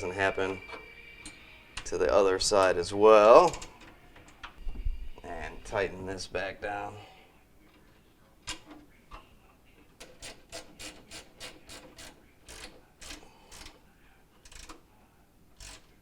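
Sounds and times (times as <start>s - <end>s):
ratchet driver clicking: 10.0s - 13.8s, 14.4s - 14.8s.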